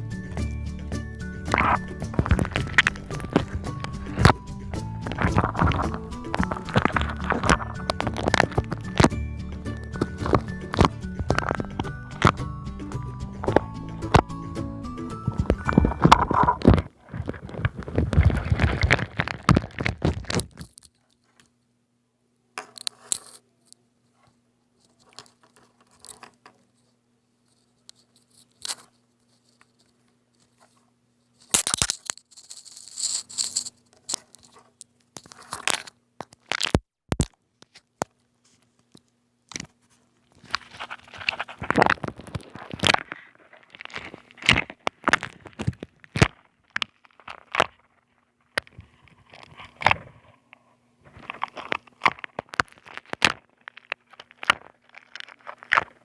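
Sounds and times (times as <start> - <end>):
slime crackling and crunching: 1.3 - 12.5, 15.2 - 20.8, 40.4 - 50.0, 51.1 - 56.0.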